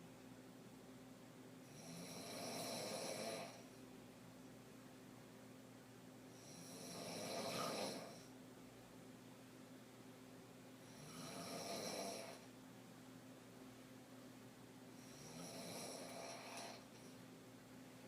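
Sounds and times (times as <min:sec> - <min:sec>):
woman snoring: 0:01.7 - 0:03.7, 0:06.4 - 0:08.3, 0:10.8 - 0:12.5, 0:15.0 - 0:17.0.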